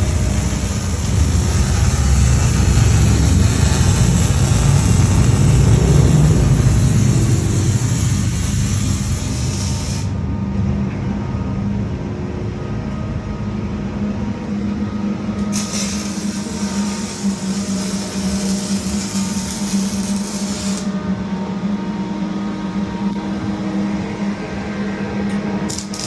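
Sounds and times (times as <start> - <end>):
car engine exhaust rumble: 0.0 - 9.4
steady high hiss: 0.0 - 10.1.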